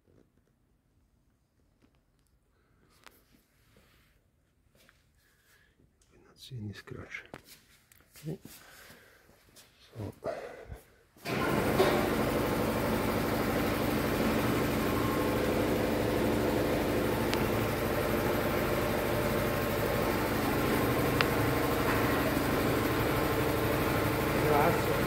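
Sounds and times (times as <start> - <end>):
engine idling: 11.3 - 25.0.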